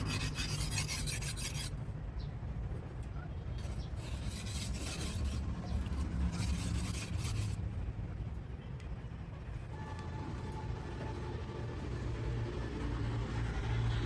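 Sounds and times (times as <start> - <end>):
hand file rasping on steel: 0.0 - 1.7, 3.6 - 7.6
low background rumble: 0.0 - 14.0.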